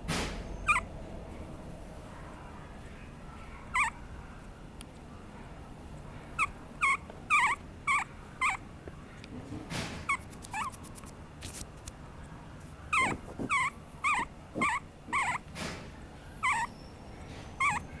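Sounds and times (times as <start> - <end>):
puppy whimpering: 0.6 - 0.9, 3.7 - 4.0, 6.4 - 8.6, 10.1 - 10.8, 12.9 - 15.4, 16.4 - 18.0.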